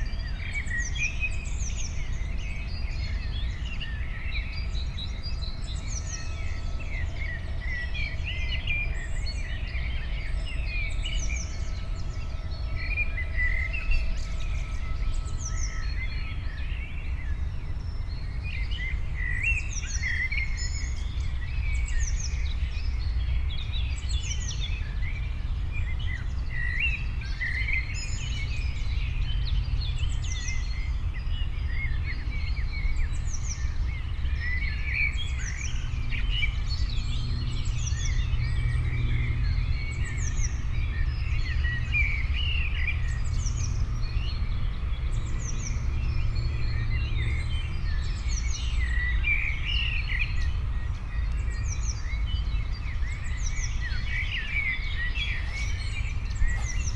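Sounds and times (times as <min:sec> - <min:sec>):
songbirds chirping and singing: 0:00.0 - 0:56.9
steady low rumble: 0:50.4 - 0:56.9.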